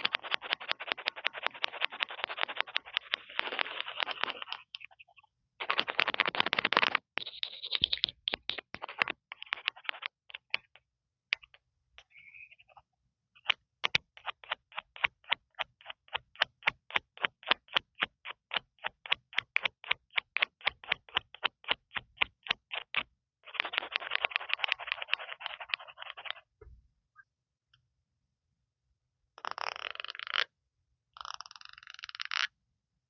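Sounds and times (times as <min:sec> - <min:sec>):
fingers scratching on microphone: 0:00.0 - 0:10.8, 0:13.4 - 0:26.5, 0:29.4 - 0:30.5, 0:31.2 - 0:32.5.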